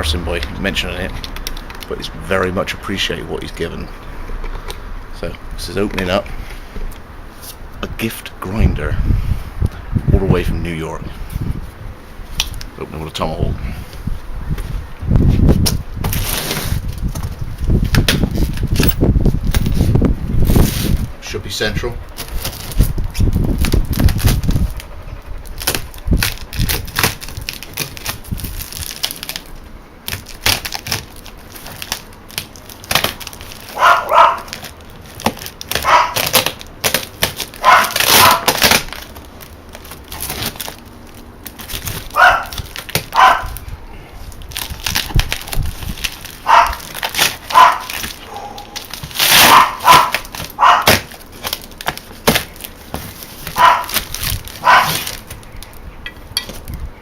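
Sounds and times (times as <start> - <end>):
dog barking: 33.8 - 34.5, 35.8 - 36.2, 37.6 - 38.5, 42.1 - 42.5, 43.1 - 43.6, 46.4 - 46.8, 47.5 - 48.8, 49.4 - 51.0, 53.6 - 54.0, 54.6 - 55.0
hatchet hacking a box: 51.9 - 54.0.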